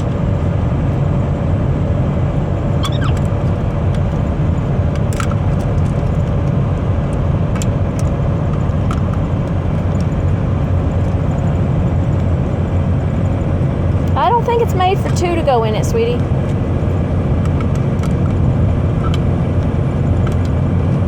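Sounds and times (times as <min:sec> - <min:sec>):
road and engine rumble: 0:00.0 - 0:21.0
seatbelt buckle clicks: 0:19.0 - 0:20.6.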